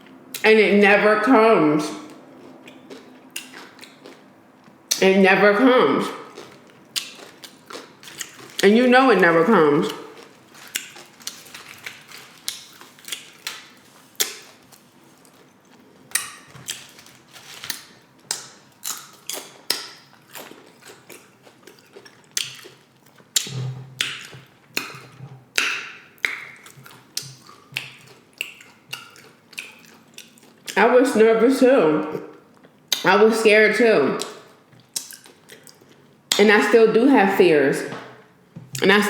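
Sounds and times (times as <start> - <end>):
crunching and chewing chips: 2.0 - 5.0, 6.1 - 30.8, 34.2 - 36.2.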